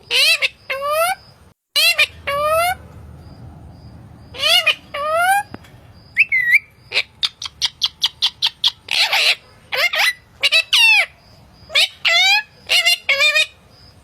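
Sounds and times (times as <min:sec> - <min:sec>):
parakeet calling: 0:00.0 - 0:11.1, 0:11.7 - 0:13.6
parakeet speech-like calls: 0:01.8 - 0:02.8, 0:04.3 - 0:05.5.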